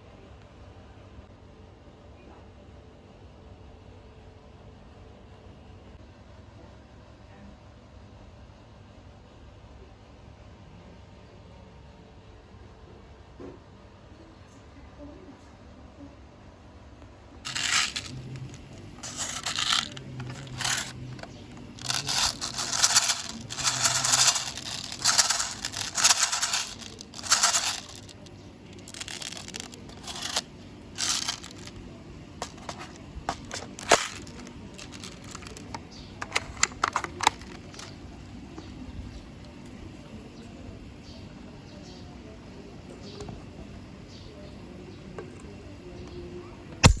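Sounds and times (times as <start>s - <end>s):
scraping and rustling: 17.5s - 31.7s, 32.4s - 38.0s.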